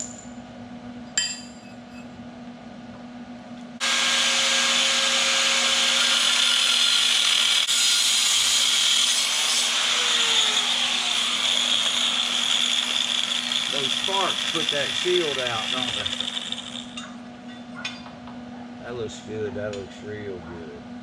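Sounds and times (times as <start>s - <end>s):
angle grinder cutting metal: 3.8s - 17.0s.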